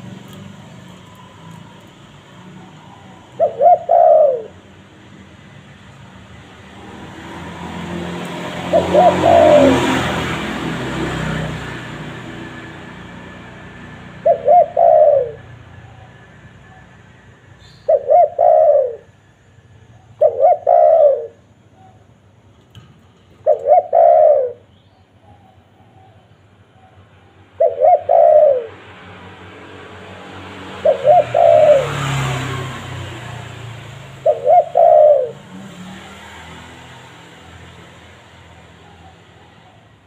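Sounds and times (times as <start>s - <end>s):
dove cooing: 2.4s - 4.9s, 6.5s - 10.7s, 14.0s - 16.9s, 17.6s - 19.2s, 19.8s - 22.0s, 23.4s - 24.7s, 26.8s - 28.9s, 30.7s - 37.4s.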